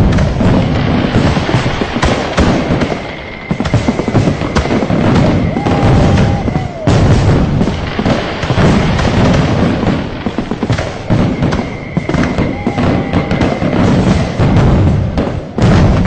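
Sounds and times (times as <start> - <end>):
firecrackers and fireworks banging: 0.0 - 16.0
steady high whistle: 11.1 - 14.4.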